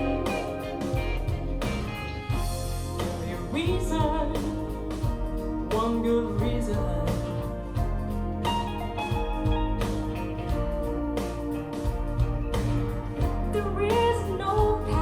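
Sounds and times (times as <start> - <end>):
woman singing over a band: 13.4 - 15.0.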